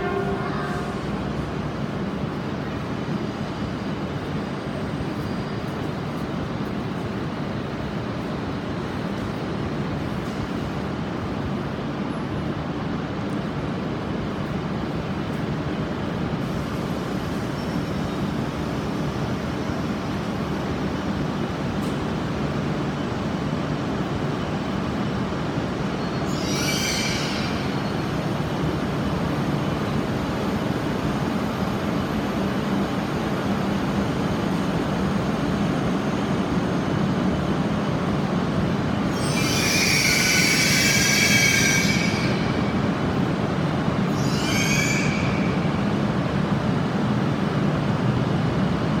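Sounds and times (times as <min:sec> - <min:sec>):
train running slowly: 0:00.0 - 0:49.0
brake squeals: 0:44.1 - 0:45.6.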